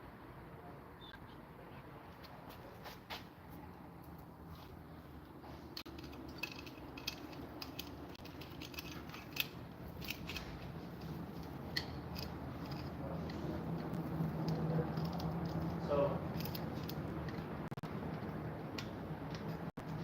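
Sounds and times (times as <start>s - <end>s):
hand tools clicking and clinking: 5.8s - 17.5s.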